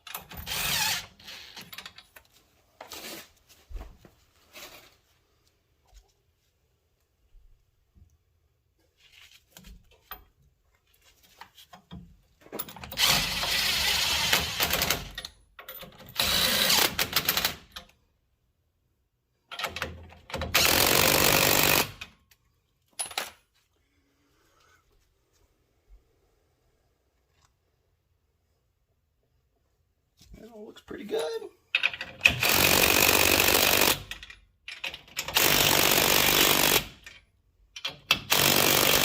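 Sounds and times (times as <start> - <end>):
impact wrench running nuts: 0.0 - 1.7, 12.8 - 15.2, 15.9 - 17.8, 19.5 - 22.1, 31.8 - 37.2, 37.8 - 39.0.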